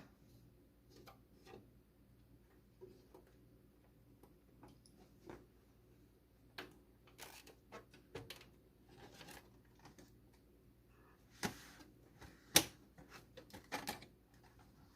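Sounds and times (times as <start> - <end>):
faint steady hum: 0.0 - 14.9.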